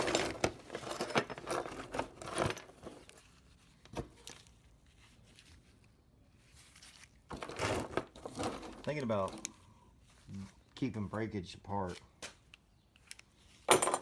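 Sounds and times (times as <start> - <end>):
scrap pieces rustling and clattering: 0.0 - 3.4, 6.4 - 9.5.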